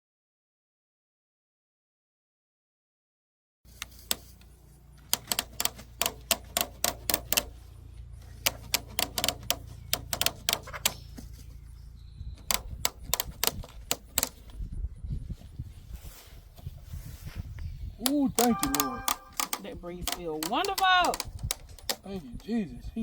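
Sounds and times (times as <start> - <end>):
hand tools clicking on wire mesh: 3.7 - 7.6, 8.3 - 11.3, 12.5 - 14.6, 18.1 - 22.1.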